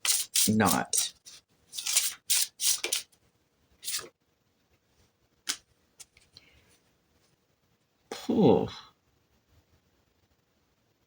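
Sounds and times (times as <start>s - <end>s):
cards shuffling: 0.0s - 3.2s, 3.8s - 4.1s.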